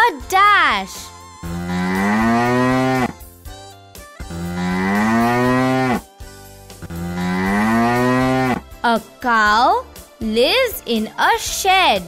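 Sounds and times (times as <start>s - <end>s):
cow mooing: 1.5s - 3.2s, 4.3s - 6.0s, 6.9s - 8.6s.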